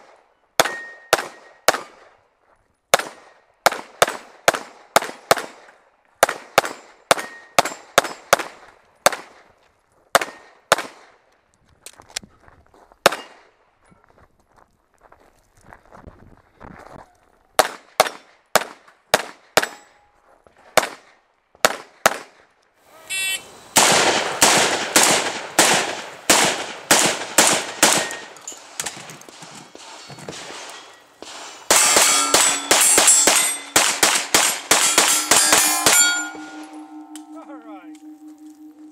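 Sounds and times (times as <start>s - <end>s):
gunshots: 0.6s - 2.1s, 23.8s - 37.6s
steel plates ringing: 27.6s - 38.9s.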